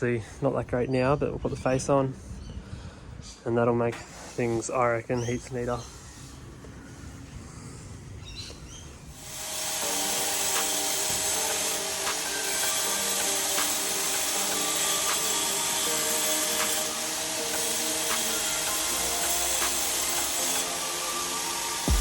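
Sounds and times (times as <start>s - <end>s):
background music with steady beat: 9.2s - 22.0s.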